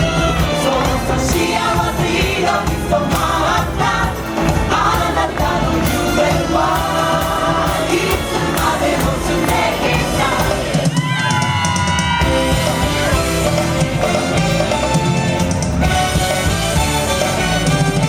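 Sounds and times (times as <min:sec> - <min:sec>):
chorus singing with music: 0:00.0 - 0:18.0.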